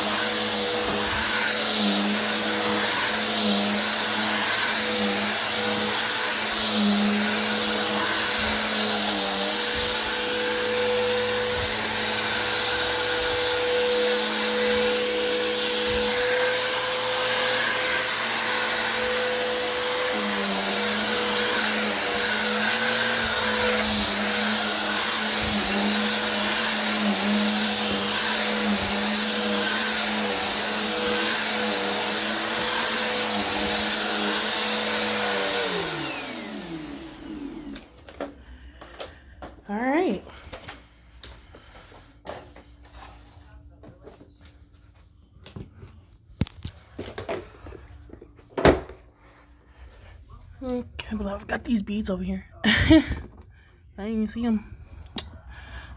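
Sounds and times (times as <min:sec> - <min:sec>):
vacuum cleaner running: 0:00.0 - 0:44.7.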